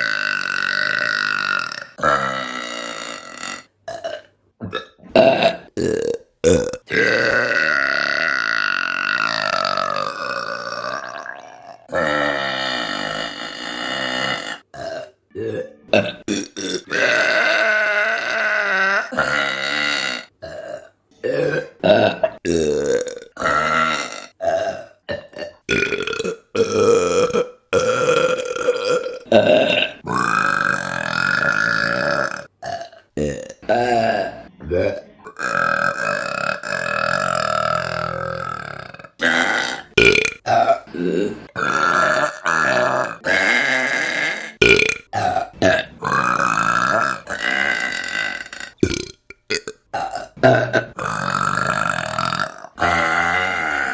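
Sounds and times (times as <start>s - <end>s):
woman burping: 0.0s - 53.9s.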